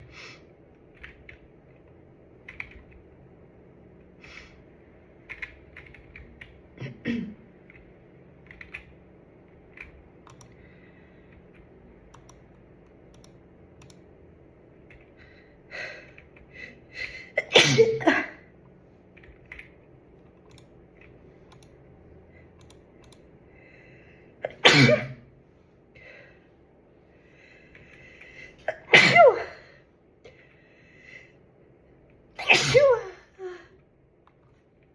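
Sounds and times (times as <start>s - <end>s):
small clicks: 9.6s - 10.7s, 11.3s - 14.1s, 18.6s - 21.8s, 22.6s - 23.3s
person sneezing: 17.4s - 18.3s, 24.5s - 25.2s, 32.4s - 33.1s.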